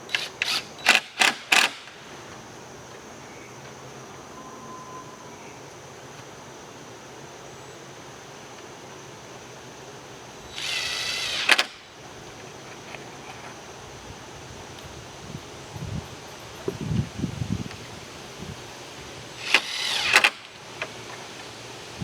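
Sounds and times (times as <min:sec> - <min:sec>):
power drill whine: 0:00.1 - 0:01.9, 0:10.5 - 0:11.9, 0:19.4 - 0:21.2.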